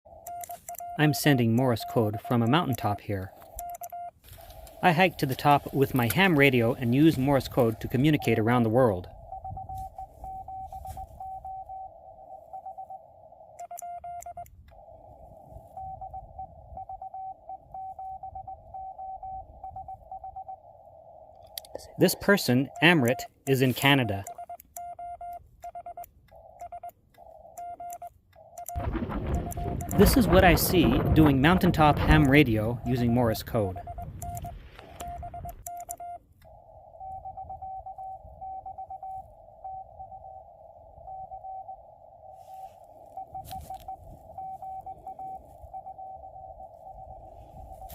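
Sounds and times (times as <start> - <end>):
morse code beeping tone: 0.1 - 47.9
radio receiver hiss: 4.2 - 13.5, 28.8 - 35.6, 38.9 - 47.9.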